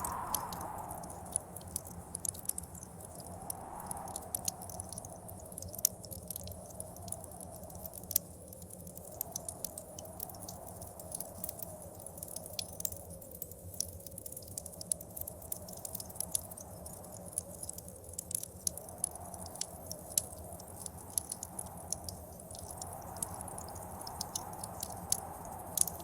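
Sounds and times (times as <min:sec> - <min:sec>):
howling wind: 0:00.0 - 0:08.2, 0:15.5 - 0:26.0
wood fire crackling and popping: 0:00.0 - 0:26.0.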